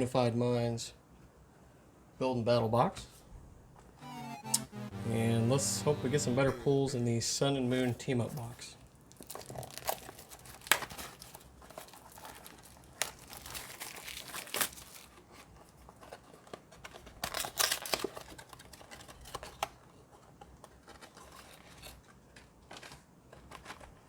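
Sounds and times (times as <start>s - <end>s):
packaging tearing and crinkling: 9.1s - 15.1s, 17.0s - 19.6s.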